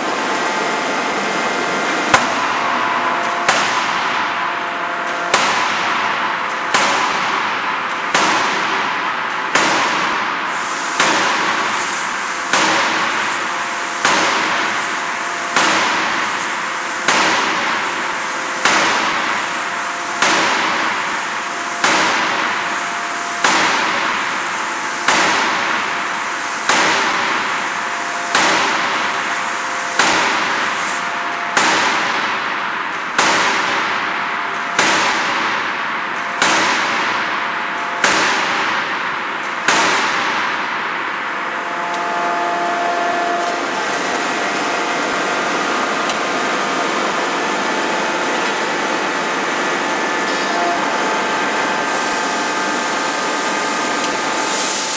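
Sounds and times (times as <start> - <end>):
machinery hum: 0.0 - 54.9
forging hammer striking: 2.1 - 27.6, 28.3 - 43.8.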